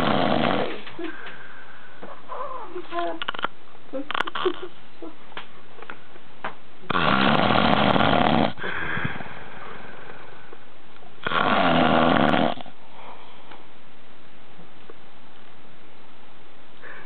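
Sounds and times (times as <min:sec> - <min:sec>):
man snoring loudly: 0:00.0 - 0:00.8, 0:06.9 - 0:08.6, 0:11.2 - 0:12.6.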